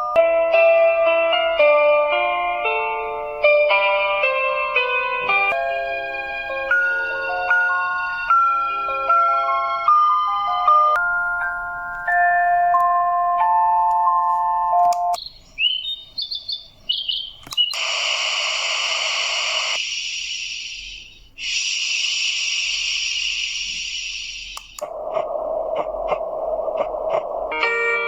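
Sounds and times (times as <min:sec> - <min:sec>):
chiming lullaby melody: 0:05.6 - 0:15.2
bird chirps: 0:15.2 - 0:17.8
clicks: 0:17.4 - 0:17.9
high hissing white noise: 0:17.8 - 0:28.0
low rushing noise: 0:23.6 - 0:28.0.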